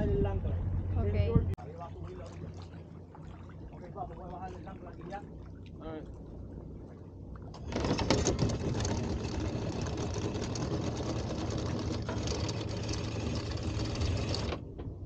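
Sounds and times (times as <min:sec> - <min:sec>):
steady motor hum: 0:00.0 - 0:15.0
anchor windlass rattling: 0:07.5 - 0:15.0.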